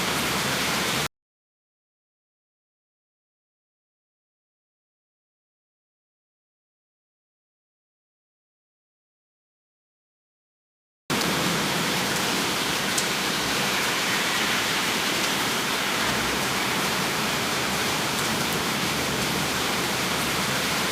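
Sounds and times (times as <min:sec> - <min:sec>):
heavy rain downpour: 0:00.0 - 0:01.1, 0:11.1 - 0:20.9.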